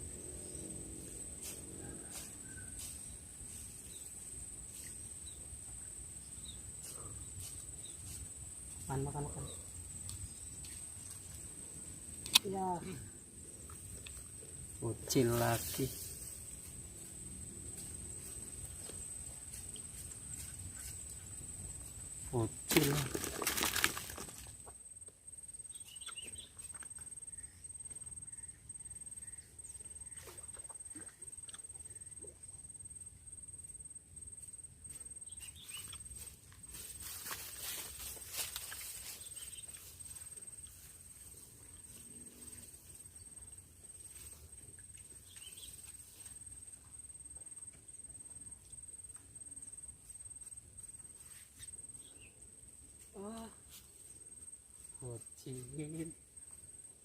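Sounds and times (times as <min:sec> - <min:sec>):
high-pitched insect trill: 0:00.0 - 0:30.5, 0:31.6 - 0:56.9
faint bird chirps: 0:25.6 - 0:32.6, 0:35.2 - 0:36.2.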